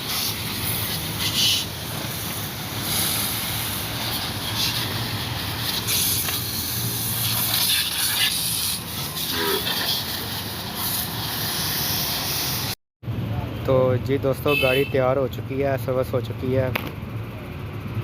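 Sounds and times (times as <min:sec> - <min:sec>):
pressure washer spray hissing: 0:00.0 - 0:12.8.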